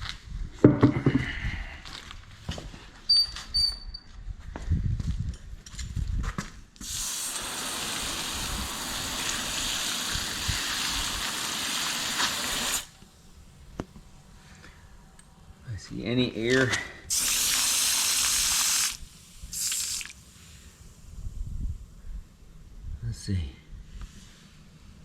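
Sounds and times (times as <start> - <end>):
water spraying from nozzle: 6.8 - 13.0, 17.1 - 20.5.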